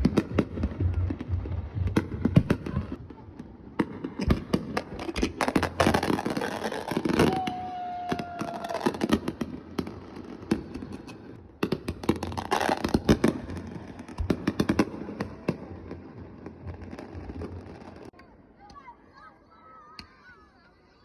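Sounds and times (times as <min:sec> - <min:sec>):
fireworks bangs and crackles: 0:00.0 - 0:18.2
faint falling firework whistle: 0:06.9 - 0:09.2.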